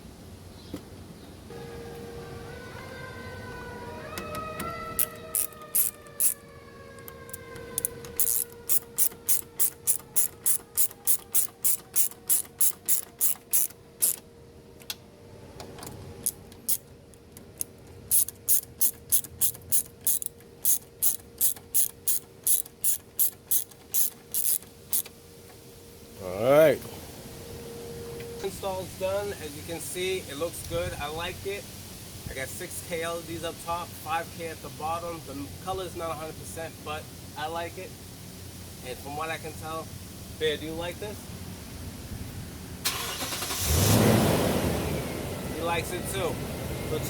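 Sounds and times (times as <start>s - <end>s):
steady hum: 1.5s - 4.0s
ratchet wrench clicking: 5.0s - 6.4s, 7.0s - 14.2s, 16.2s - 16.8s, 17.6s - 25.1s.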